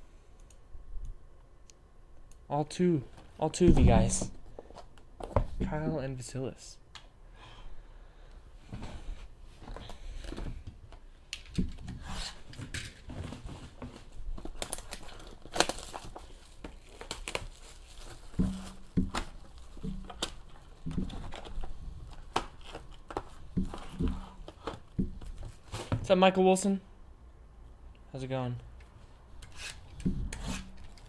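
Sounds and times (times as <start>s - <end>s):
packaging tearing and crinkling: 14.4s - 23.3s.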